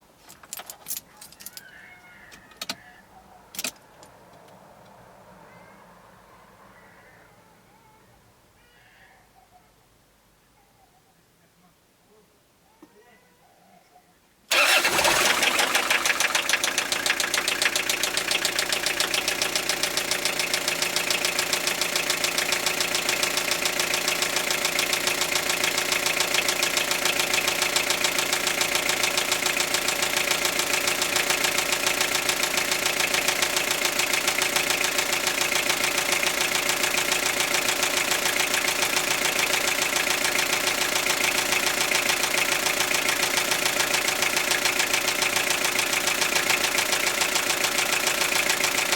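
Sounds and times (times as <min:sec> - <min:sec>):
diesel engine idling: 0:14.5 - 0:48.9.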